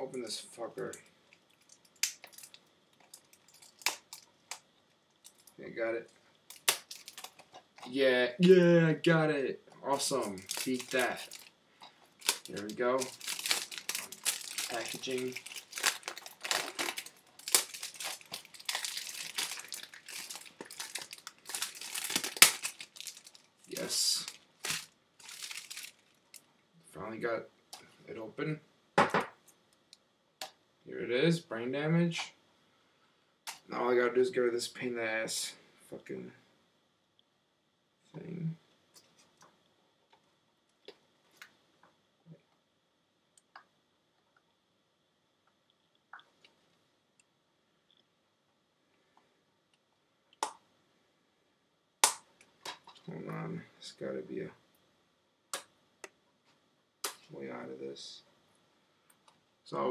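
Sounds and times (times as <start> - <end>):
plastic packaging crinkling: 0.8 - 4.6, 6.5 - 7.6, 9.9 - 26.4
fingers picking at plastic wrapping: 6.5 - 7.5, 10.2 - 11.5, 12.2 - 23.5, 24.2 - 26.0.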